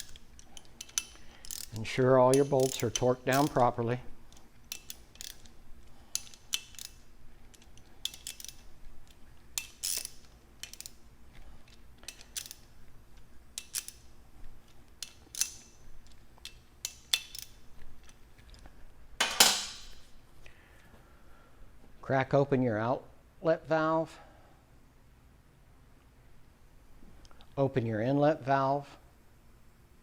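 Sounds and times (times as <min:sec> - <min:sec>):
wrench and socket clicking: 0:00.0 - 0:18.6
metal clatter: 0:19.2 - 0:20.0.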